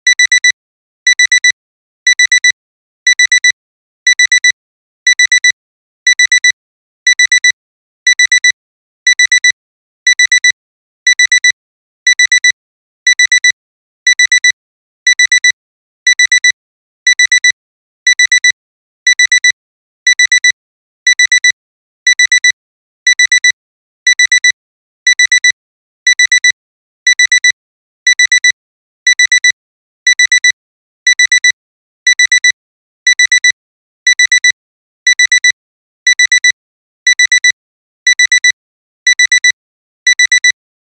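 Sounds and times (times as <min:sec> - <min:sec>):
digital alarm clock beeping: 0:00.1 - 0:00.5, 0:01.2 - 0:01.5, 0:02.2 - 0:02.5, 0:03.2 - 0:03.5, 0:04.2 - 0:04.5, 0:05.2 - 0:05.5, 0:06.2 - 0:06.5, 0:07.2 - 0:07.5, 0:08.2 - 0:08.5, 0:09.2 - 0:09.5, 0:10.2 - 0:10.5, 0:11.2 - 0:11.5, 0:12.2 - 0:12.5, 0:31.2 - 0:31.5, 0:32.2 - 0:32.5, 0:33.2 - 0:33.6, 0:34.2 - 0:34.6, 0:35.2 - 0:35.6, 0:36.2 - 0:36.6, 0:37.2 - 0:39.6, 0:40.2 - 0:40.6.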